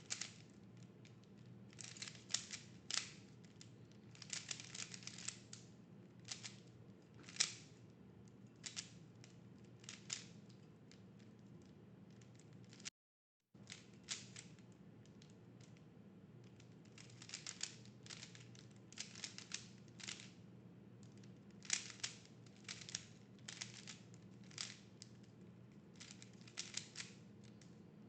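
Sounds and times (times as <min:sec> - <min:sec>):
faint low hum: 0:00.0 - 0:12.8, 0:13.6 - 0:28.0
puzzle cube layers clicking: 0:00.1 - 0:00.4, 0:01.8 - 0:03.2, 0:04.2 - 0:05.5, 0:17.0 - 0:18.4, 0:19.0 - 0:20.2, 0:21.7 - 0:23.9, 0:24.5 - 0:24.8, 0:26.0 - 0:27.2.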